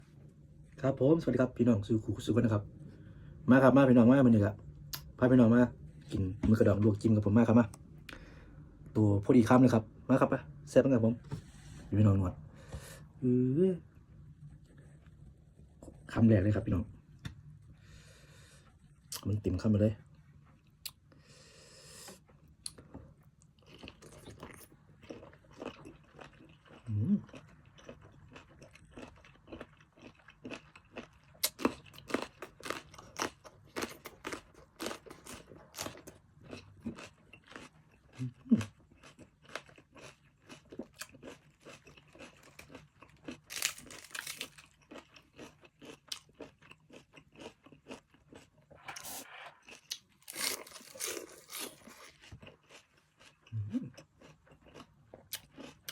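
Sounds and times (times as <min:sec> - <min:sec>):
wet crunchy chewing: 0:23.6 - 0:55.9.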